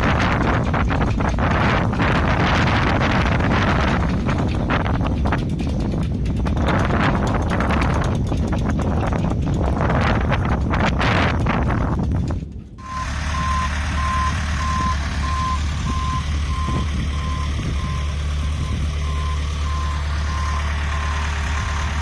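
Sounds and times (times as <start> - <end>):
hoist engine running: 0.0 - 22.0
wind buffeting microphone: 0.0 - 22.0
warning beeper beeps: 12.8 - 21.2.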